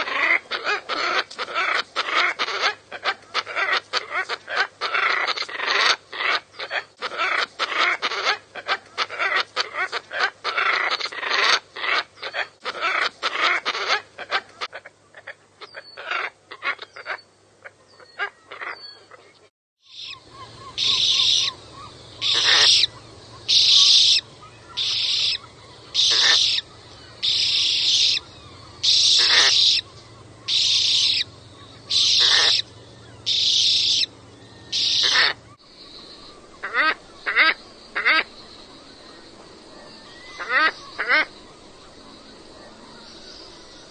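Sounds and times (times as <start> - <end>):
ibis harsh calls: 19.8 - 42.2.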